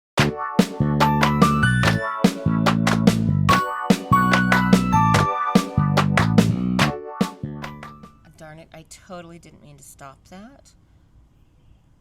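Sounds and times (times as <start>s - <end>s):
upbeat electronic music: 0.2s - 8.2s.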